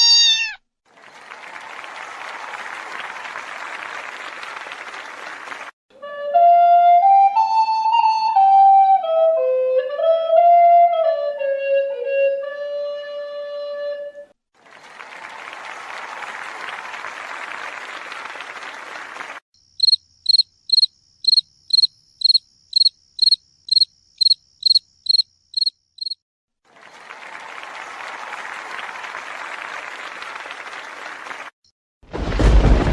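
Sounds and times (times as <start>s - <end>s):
applause: 0.9s - 5.8s, 14.6s - 19.4s, 26.6s - 31.6s
flute-like woodwind melody: 5.9s - 14.3s
cricket chirping: 19.6s - 26.2s.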